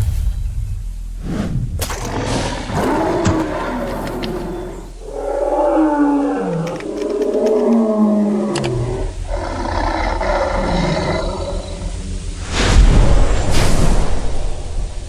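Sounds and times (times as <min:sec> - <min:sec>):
big cat roaring: 0:01.8 - 0:12.5.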